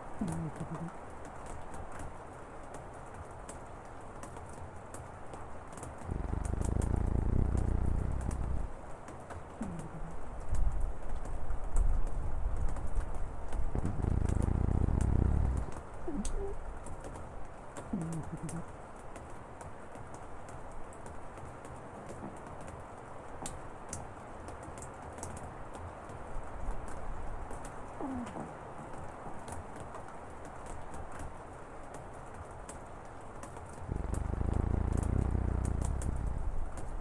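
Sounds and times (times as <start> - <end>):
rain pattering: 0.0 - 37.0
low voice-like sound: 0.2 - 0.9, 9.6 - 10.2, 13.8 - 16.6, 17.9 - 18.6, 28.0 - 28.6
puppy snoring: 0.2 - 0.9, 6.1 - 8.7, 9.6 - 10.2, 13.6 - 16.6, 17.9 - 18.6, 28.0 - 28.5, 33.9 - 36.8.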